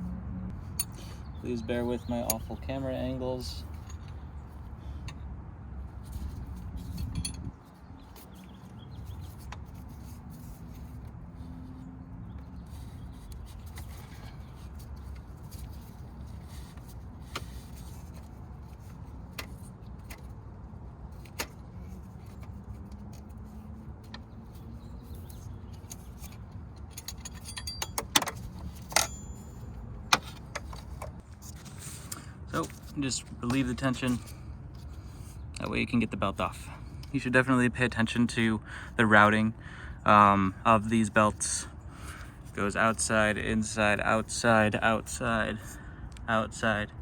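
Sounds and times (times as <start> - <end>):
hand tools clinking on metal: 2.0 - 2.7, 26.8 - 29.7.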